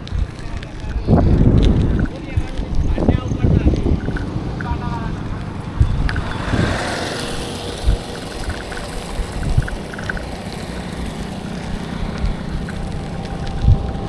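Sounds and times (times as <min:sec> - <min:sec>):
road and wind rumble: 0:00.0 - 0:14.0
short low thumps: 0:01.1 - 0:07.0.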